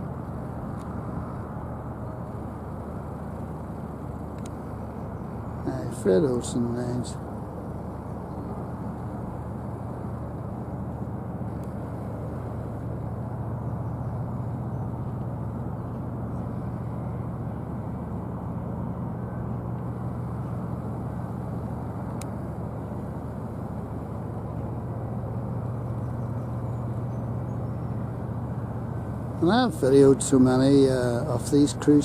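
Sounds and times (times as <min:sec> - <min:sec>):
low mechanical drone: 0:00.0 - 0:32.0
faint click: 0:22.1 - 0:22.3.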